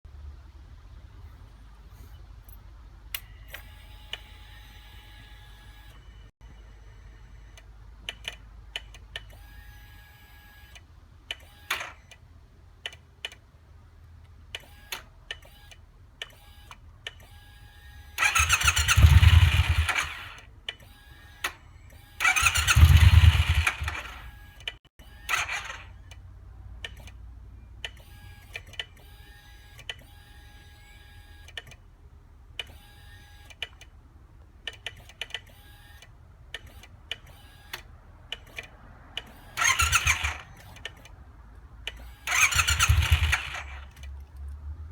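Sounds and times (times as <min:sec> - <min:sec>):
starter motor cranking engine: 0:18.2 - 0:20.5, 0:22.2 - 0:26.0, 0:37.7 - 0:41.1, 0:41.9 - 0:44.2
starting system clicking: 0:42.3 - 0:43.8.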